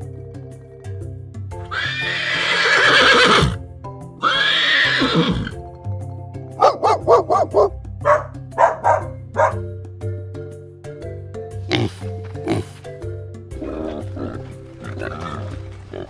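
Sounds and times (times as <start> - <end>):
background music: 0.0 - 16.0
horse whinnying: 1.6 - 3.6, 4.2 - 5.6
dog barking: 6.6 - 9.7.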